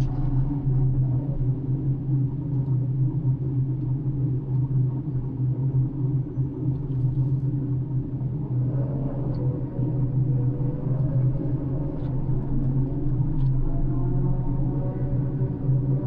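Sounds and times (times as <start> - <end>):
fainter higher hum: 7.3 - 16.0.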